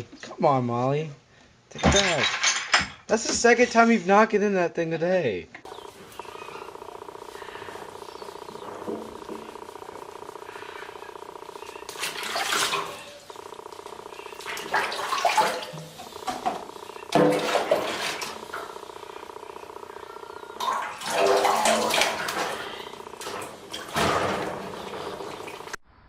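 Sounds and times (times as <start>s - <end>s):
steady hum: 5.6s - 25.8s
pet crying: 5.7s - 15.1s.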